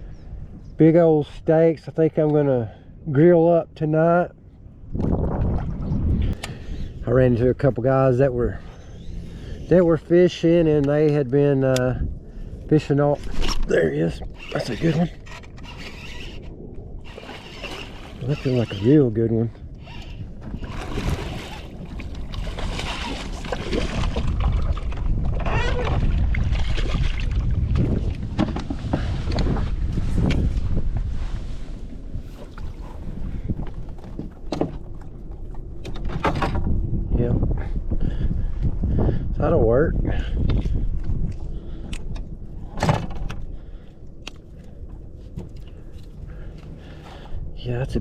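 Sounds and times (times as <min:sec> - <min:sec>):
wind rumbling on microphone: 0:00.0 - 0:01.9, 0:02.9 - 0:48.0
clicks and knocks in a boat: 0:14.3 - 0:30.7, 0:32.4 - 0:36.8, 0:40.4 - 0:46.8
water sloshing and splashing: 0:14.4 - 0:19.0, 0:19.9 - 0:30.2, 0:31.5 - 0:36.8.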